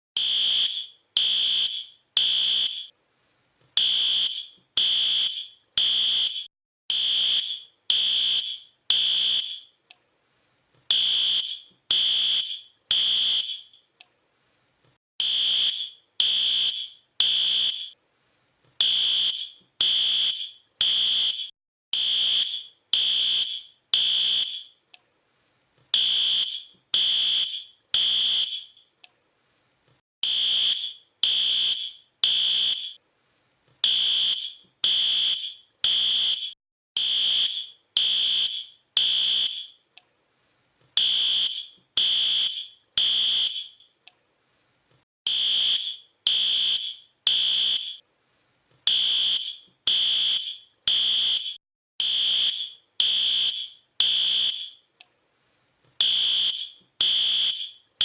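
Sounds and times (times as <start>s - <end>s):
fire alarm beeping: 0.2s - 2.9s, 3.8s - 9.7s, 10.9s - 13.8s, 15.2s - 18.0s, 18.8s - 24.8s, 26.0s - 28.8s, 30.2s - 33.0s, 33.8s - 39.8s, 41.0s - 43.8s, 45.3s - 48.0s, 48.9s - 54.8s, 56.0s - 57.8s.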